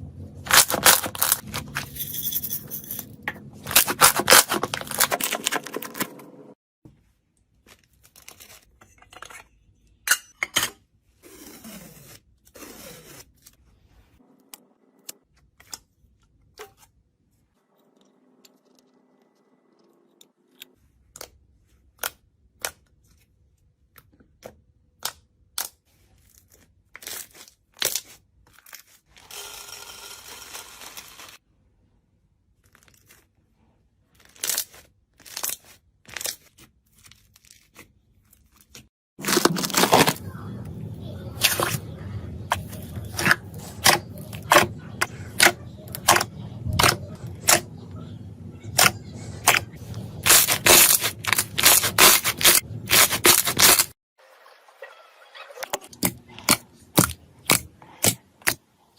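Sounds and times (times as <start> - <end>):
slime crunching: 34.0 - 47.8, 48.7 - 53.9.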